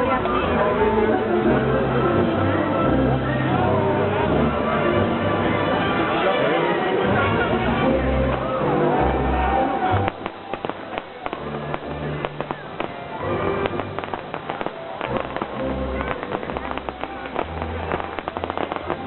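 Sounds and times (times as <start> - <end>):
music with low notes: 0.0 - 19.0
fireworks popping and crackling: 8.2 - 19.0.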